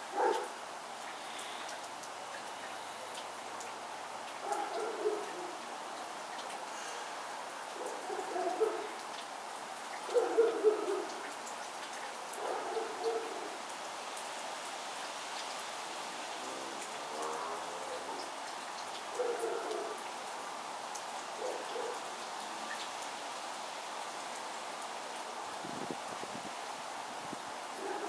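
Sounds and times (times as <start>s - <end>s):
steady hiss: 0.0s - 4.4s, 5.2s - 8.0s
faint ticks: 1.0s - 5.4s.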